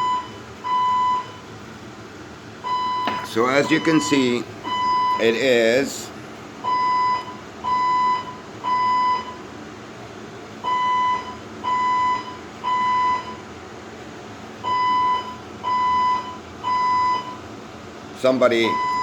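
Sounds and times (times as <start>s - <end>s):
fire alarm beeping: 0.0s - 1.5s, 2.6s - 5.4s, 6.6s - 9.5s, 10.6s - 13.5s, 14.6s - 17.5s, 18.5s - 19.0s.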